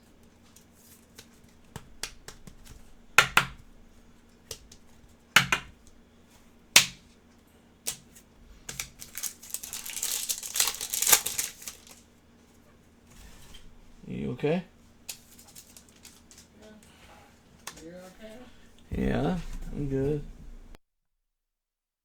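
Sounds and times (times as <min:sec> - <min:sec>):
crinkly packaging rustling: 0:08.6 - 0:12.2, 0:15.0 - 0:16.8.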